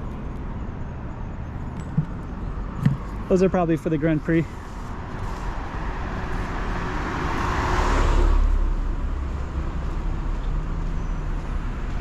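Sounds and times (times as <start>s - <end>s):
car driving past: 5.6s - 10.4s.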